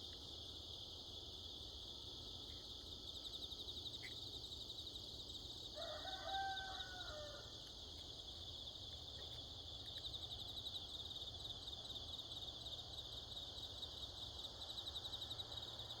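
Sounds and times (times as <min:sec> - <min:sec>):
crickets chirping: 0:00.0 - 0:16.0
rooster crowing: 0:05.8 - 0:07.5.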